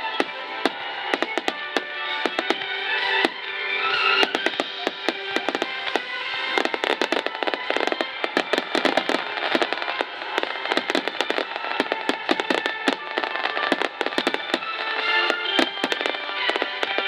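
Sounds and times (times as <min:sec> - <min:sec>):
fireworks bursts and crackles: 0:00.0 - 0:17.0
music: 0:00.0 - 0:17.0.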